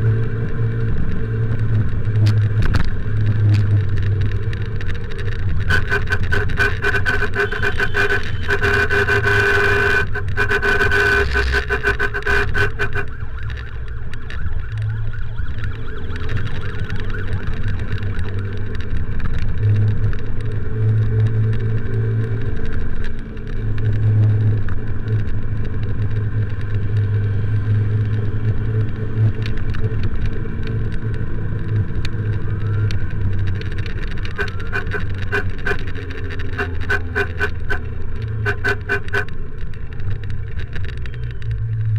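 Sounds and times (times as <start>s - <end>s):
motorcycle engine rumble: 0.0s - 41.9s
motorcycle horn: 5.7s - 13.2s, 34.2s - 39.4s.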